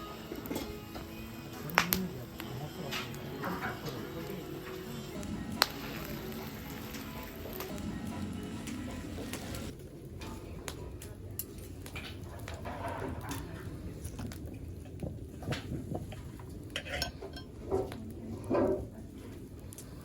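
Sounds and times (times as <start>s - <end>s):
cutlery and dishes clinking: 2.8s - 4.8s, 16.8s - 17.9s.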